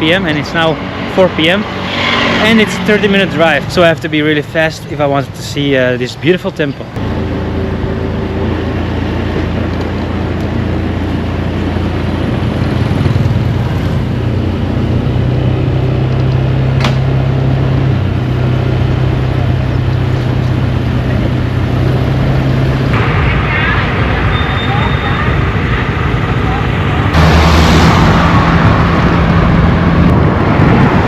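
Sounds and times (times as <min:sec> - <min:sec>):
steady rushing noise: 0:00.0 - 0:04.5, 0:25.2 - 0:31.0.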